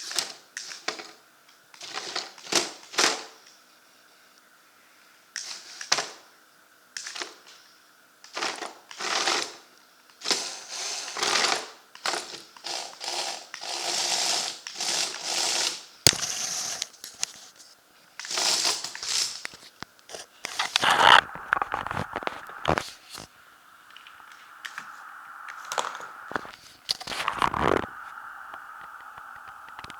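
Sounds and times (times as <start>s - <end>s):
plastic parts clattering: 18.3s - 23.3s
electric motors and gears whirring: 20.1s - 29.9s.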